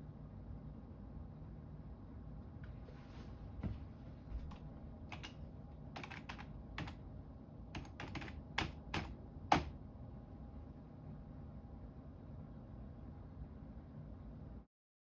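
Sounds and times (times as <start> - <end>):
computer keyboard typing: 4.5 - 7.0, 7.7 - 9.8.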